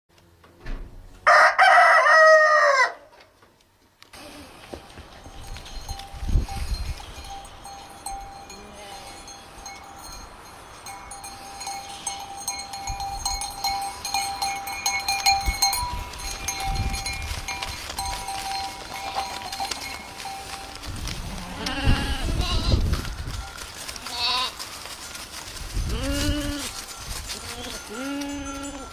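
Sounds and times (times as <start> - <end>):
goat bells clinking: 4.5 - 28.9
goat bleating: 21.2 - 22.9, 24.0 - 24.6, 25.9 - 26.8, 27.4 - 28.9.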